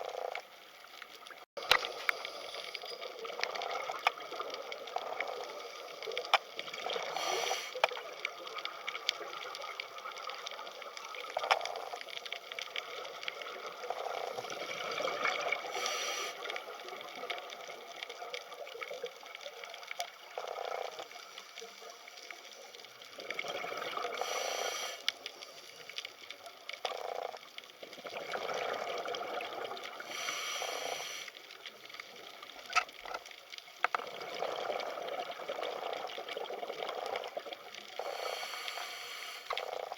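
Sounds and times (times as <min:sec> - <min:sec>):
small clicks and crackles: 0:00.0 - 0:39.9
bubbling gushes: 0:03.0 - 0:19.1, 0:22.9 - 0:25.0, 0:26.8 - 0:31.0, 0:33.9 - 0:39.9
underwater hiss of moving water: 0:06.8 - 0:07.9, 0:14.2 - 0:16.8, 0:23.8 - 0:26.0, 0:29.8 - 0:31.6, 0:37.9 - 0:39.9.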